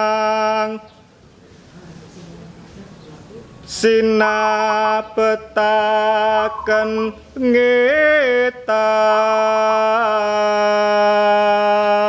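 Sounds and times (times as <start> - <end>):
solo voice chanting: 3.7 - 12.0.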